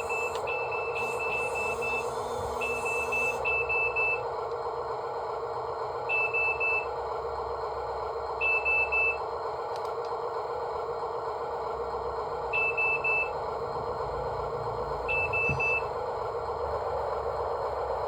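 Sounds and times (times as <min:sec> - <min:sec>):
excavator warning beeps: 0:00.0 - 0:04.2, 0:06.1 - 0:06.9, 0:08.4 - 0:09.2, 0:12.5 - 0:13.4, 0:15.1 - 0:15.9
mechanical hum: 0:00.0 - 0:18.0.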